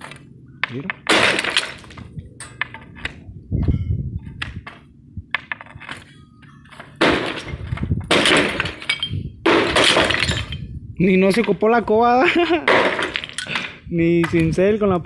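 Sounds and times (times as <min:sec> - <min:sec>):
tiles breaking and clattering: 0:01.0 - 0:02.7, 0:06.8 - 0:10.6, 0:12.6 - 0:14.4.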